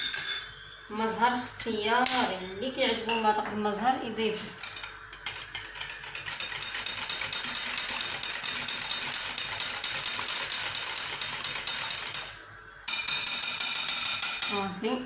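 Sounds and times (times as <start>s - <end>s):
whisk rattling against metal pan: 4.6s - 14.7s.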